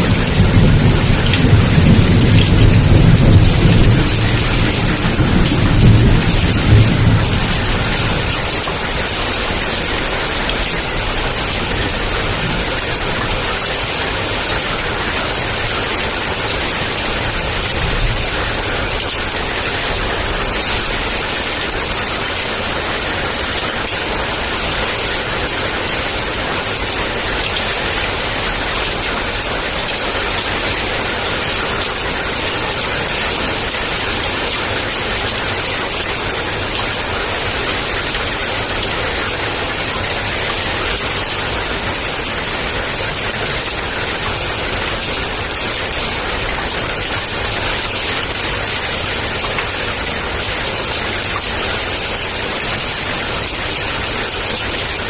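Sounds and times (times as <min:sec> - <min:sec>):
heavy rain downpour: 0:00.0 - 0:55.0.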